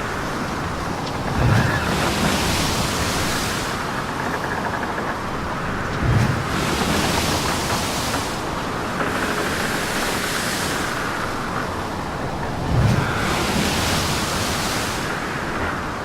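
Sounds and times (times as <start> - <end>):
water washing past boat hull: 0.0 - 16.0
wind rushing over microphone: 0.0 - 16.0.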